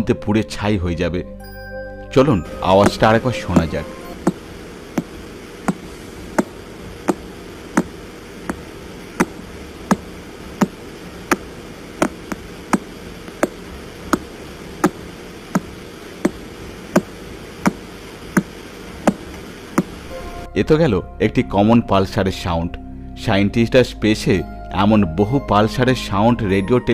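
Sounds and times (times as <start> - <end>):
static hiss: 2.2 - 20.5.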